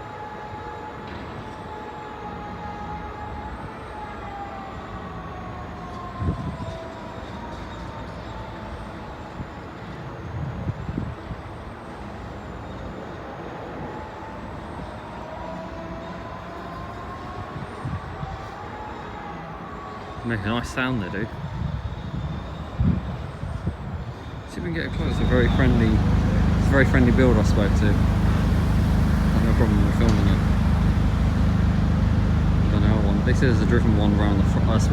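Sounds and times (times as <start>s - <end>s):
diesel engine and hydraulics running: 21.7s - 34.9s
whine changing pitch: 24.6s - 34.9s.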